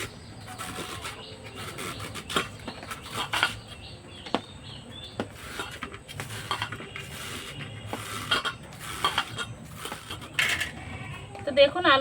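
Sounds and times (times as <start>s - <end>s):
potato grating rasps: 0.0s - 3.6s.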